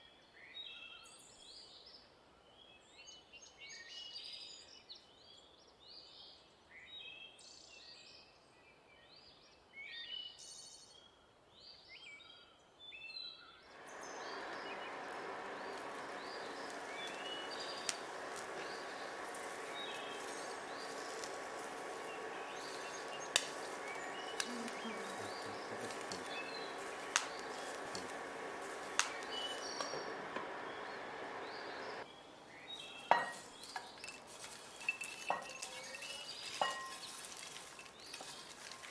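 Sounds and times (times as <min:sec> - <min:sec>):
oil sizzling in a frying pan: 0:13.8 - 0:32.0
sharp pops: 0:13.8 - 0:32.0.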